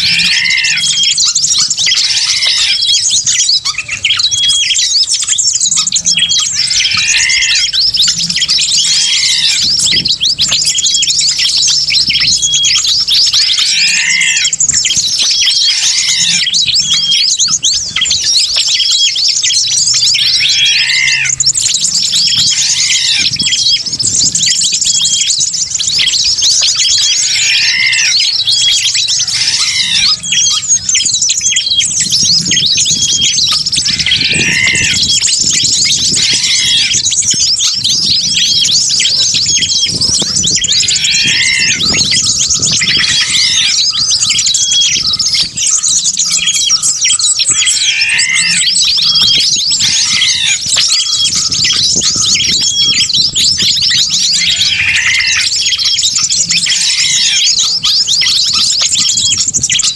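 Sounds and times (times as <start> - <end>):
lower arching bird call: 0.0 - 1.3, 6.5 - 9.8, 13.4 - 14.6, 20.2 - 21.4, 27.1 - 30.6, 33.9 - 35.2, 36.2 - 37.0, 40.7 - 42.1, 47.6 - 49.3, 54.4 - 55.5
small birds chirping and twittering: 0.0 - 59.9.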